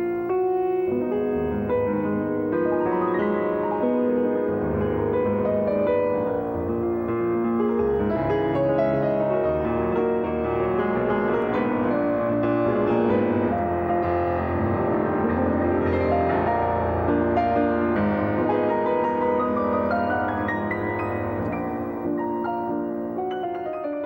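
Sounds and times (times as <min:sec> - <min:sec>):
piano chords: 0:00.0 - 0:24.0.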